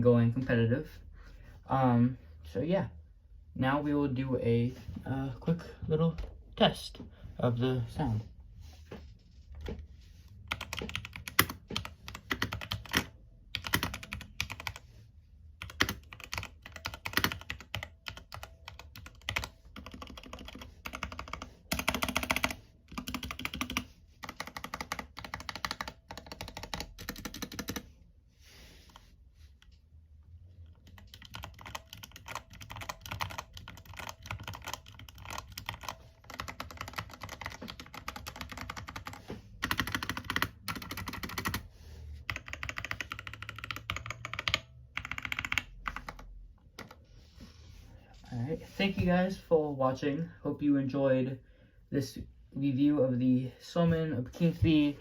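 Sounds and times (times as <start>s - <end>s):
mechanical keyboard typing: 10.5s - 14.8s, 15.6s - 27.9s, 30.7s - 41.6s, 42.3s - 47.0s.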